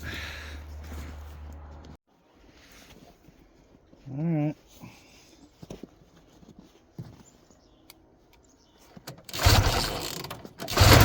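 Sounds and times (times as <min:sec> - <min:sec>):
two-stroke snowmobile engine running: 0:09.3 - 0:11.0.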